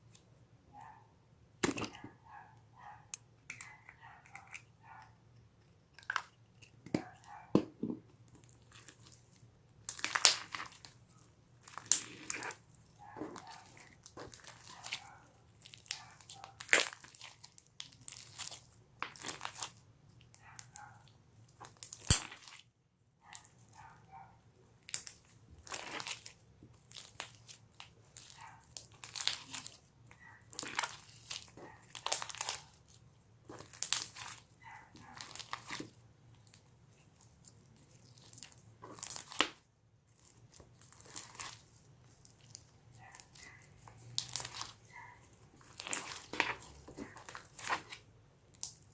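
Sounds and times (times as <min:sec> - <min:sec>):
slime crackling and popping: 0:08.3 - 0:20.8, 0:21.5 - 0:22.7, 0:24.8 - 0:48.9.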